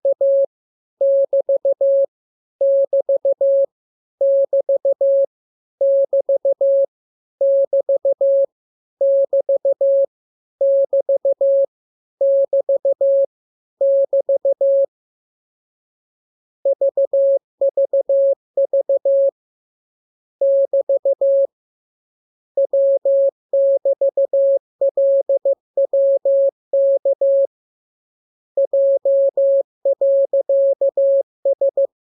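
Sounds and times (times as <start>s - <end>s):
morse code beeps: 16.7s - 19.3s, 20.4s - 21.5s, 22.6s - 27.5s, 28.6s - 32.0s.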